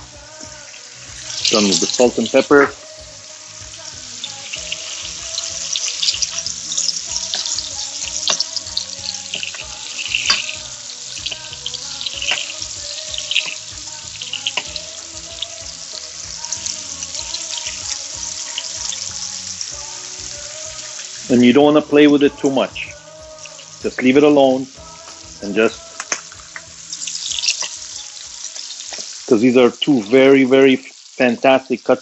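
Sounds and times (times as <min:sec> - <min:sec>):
steaks sizzling in a pan: 0:00.0 - 0:32.0
sharp pops and spatters: 0:03.6 - 0:21.3, 0:24.8 - 0:31.3.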